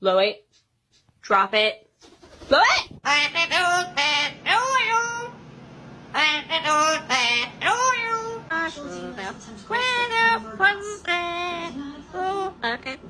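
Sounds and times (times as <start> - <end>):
parrot calling: 2.6 - 5.5, 6.1 - 8.6.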